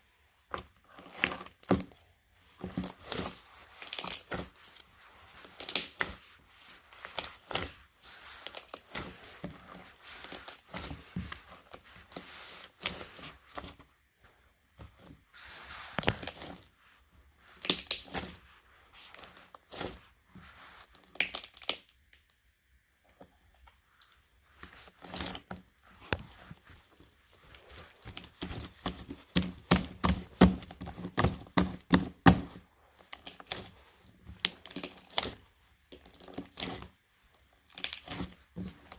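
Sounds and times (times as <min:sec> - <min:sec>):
slime popping and crackling: 0:02.8 - 0:04.6, 0:05.4 - 0:09.3, 0:17.6 - 0:18.4, 0:21.0 - 0:22.3, 0:27.5 - 0:36.9, 0:37.5 - 0:38.9.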